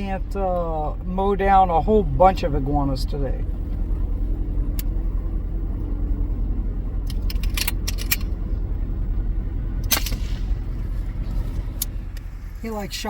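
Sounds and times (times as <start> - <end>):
vehicle engine idling: 0.0 - 13.0
light clicks and rattles: 7.0 - 8.4
air rifle shot: 9.8 - 10.7.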